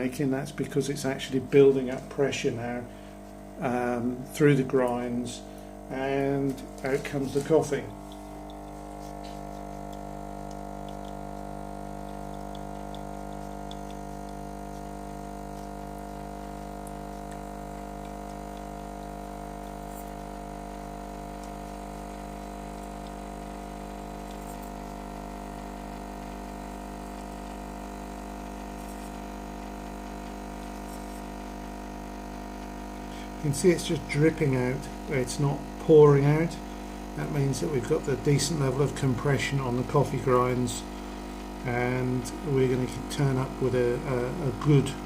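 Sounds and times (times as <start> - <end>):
espresso machine pump humming: 0.0 - 45.0.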